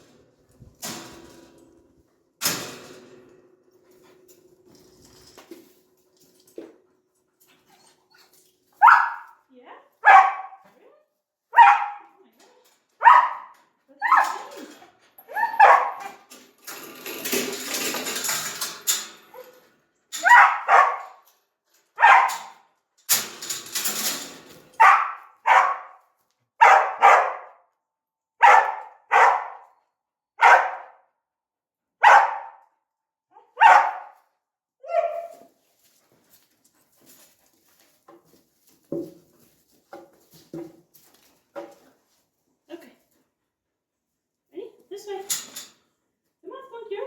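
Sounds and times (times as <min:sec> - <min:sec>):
dog barking: 0:08.8 - 0:09.4, 0:10.0 - 0:10.7, 0:11.5 - 0:12.2, 0:13.0 - 0:14.5, 0:15.3 - 0:16.2, 0:20.2 - 0:21.2, 0:22.0 - 0:22.6, 0:24.8 - 0:26.0, 0:26.6 - 0:27.7, 0:28.4 - 0:29.8, 0:30.4 - 0:31.0, 0:32.0 - 0:32.6, 0:33.4 - 0:34.2, 0:34.9 - 0:35.3.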